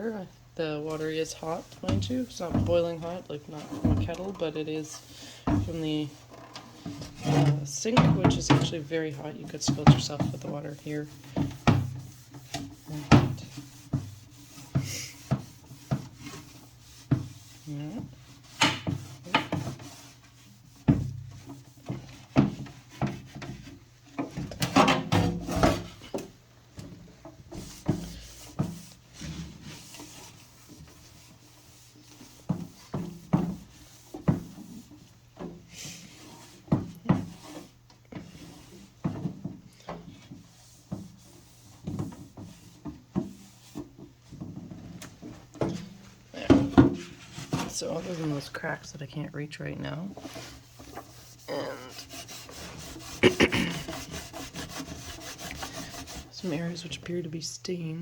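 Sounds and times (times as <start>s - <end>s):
cloth scrubbing plastic: 0.6s - 24.5s, 27.1s - 58.0s
fridge parts knocking and clattering: 6.8s - 10.7s, 20.8s - 29.6s, 44.0s - 47.8s.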